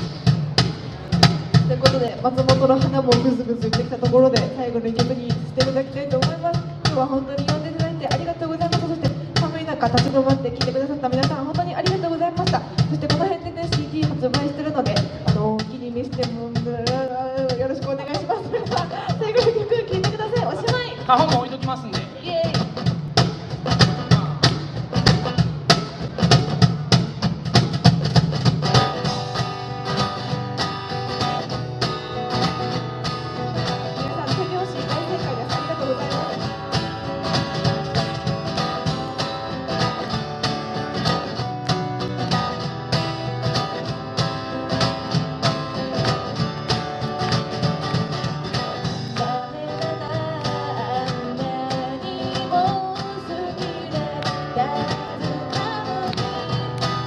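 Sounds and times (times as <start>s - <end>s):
guitar playing: 0.0s - 57.0s
person singing: 33.7s - 38.2s, 49.1s - 56.6s.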